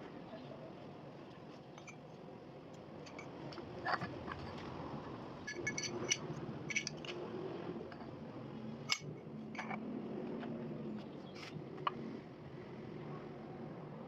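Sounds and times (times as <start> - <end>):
small metal parts clinking: 3.0 - 4.6, 5.4 - 7.2, 8.9 - 9.8.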